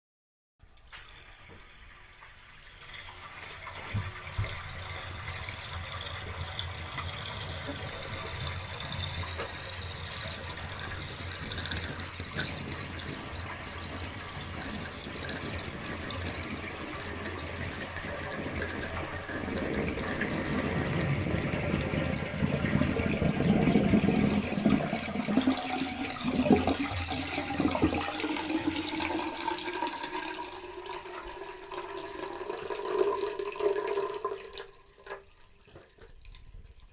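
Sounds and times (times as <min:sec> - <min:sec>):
bathtub water draining: 0:00.7 - 0:36.9.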